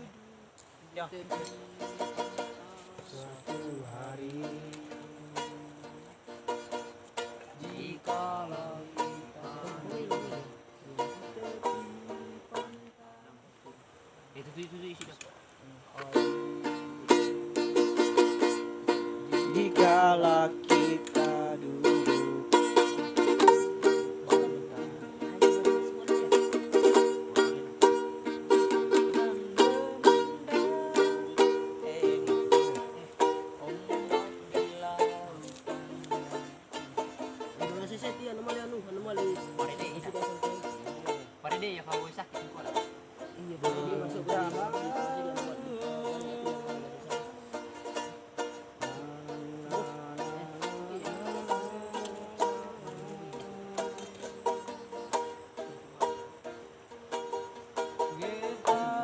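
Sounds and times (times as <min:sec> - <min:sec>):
plucked string instrument music: 0:00.0 - 0:13.0, 0:16.0 - 0:59.0.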